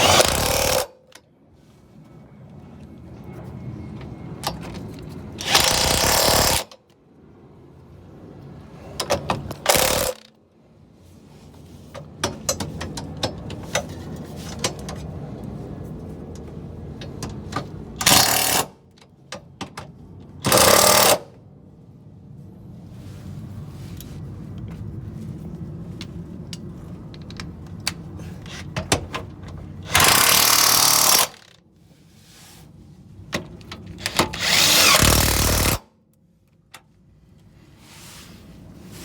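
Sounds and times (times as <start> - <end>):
impact wrench driving bolts: 0.0 - 1.0, 5.4 - 6.8, 18.0 - 18.7, 20.4 - 21.3, 29.8 - 31.5, 33.9 - 35.8
tool and metal clicks: 0.0 - 1.2, 17.0 - 21.3, 27.2 - 31.6, 33.4 - 35.8.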